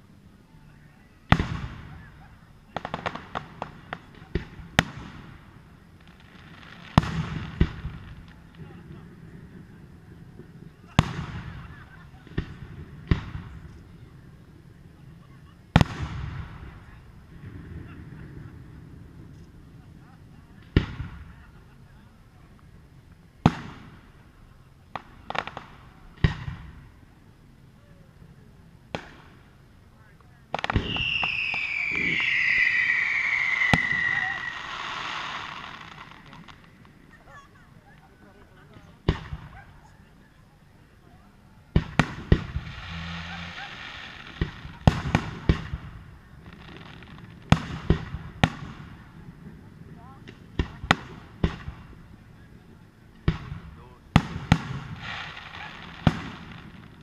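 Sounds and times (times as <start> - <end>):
firework shells booming: 1.3 - 9.6, 10.3 - 13.8, 15.7 - 19.6, 20.6 - 21.5, 23.4 - 24.3, 24.9 - 27.0, 28.9 - 29.6, 30.5 - 37.0, 41.7 - 49.4, 50.2 - 52.2, 53.1 - 57.0
crackling pops: 24.9 - 26.8, 28.9 - 29.5, 30.2 - 37.2, 41.7 - 49.1, 50.2 - 51.9, 53.1 - 57.0.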